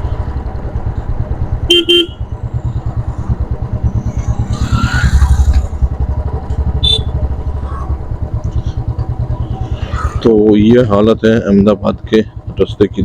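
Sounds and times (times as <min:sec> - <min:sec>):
motorcycle engine running: 0:00.0 - 0:13.0
horn beeps: 0:01.6 - 0:02.3, 0:06.7 - 0:07.4.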